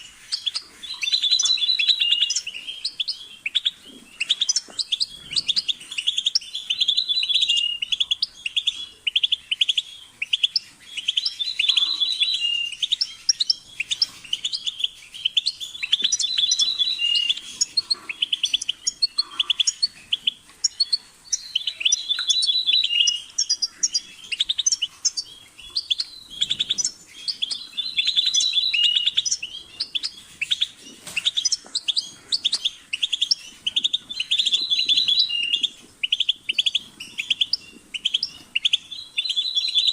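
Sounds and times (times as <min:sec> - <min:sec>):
goldfinch twittering song: 0:00.0 - 0:39.9.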